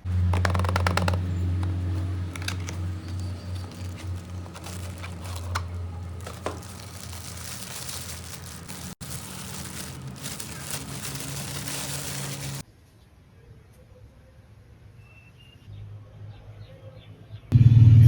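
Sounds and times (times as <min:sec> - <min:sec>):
packaging rustling and crinkling: 0:00.0 - 0:12.6.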